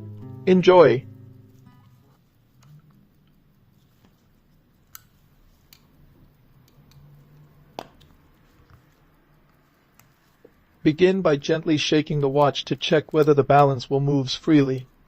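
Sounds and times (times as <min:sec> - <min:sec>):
low steady hum: 0:00.0 - 0:15.0
small objects clicking and tapping: 0:01.8 - 0:10.8.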